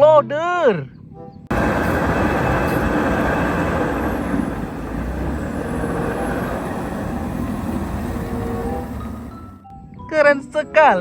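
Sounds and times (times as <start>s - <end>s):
loader engine rumbling: 1.5s - 9.6s.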